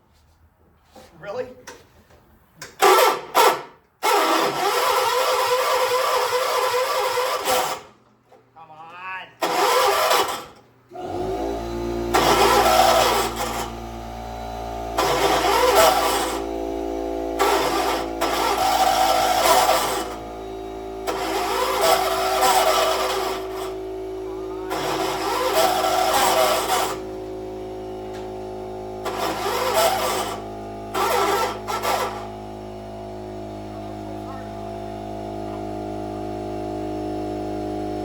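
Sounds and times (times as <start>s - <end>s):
lawn tractor engine running: 4.0s - 8.1s, 9.4s - 38.0s
loud bursts of noise: 15.0s - 27.9s.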